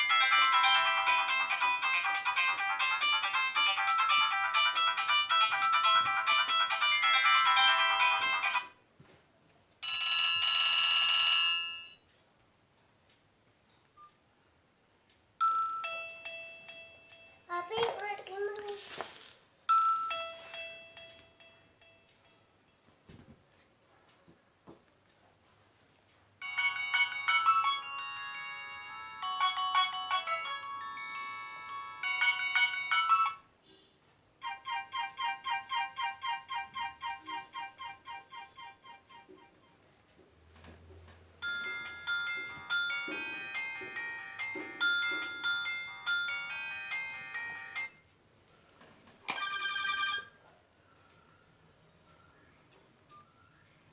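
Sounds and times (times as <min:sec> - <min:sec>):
electronic ringtone melody: 0:00.0 - 0:08.8, 0:26.4 - 0:33.4, 0:34.4 - 0:39.8, 0:41.4 - 0:48.0, 0:49.3 - 0:50.3.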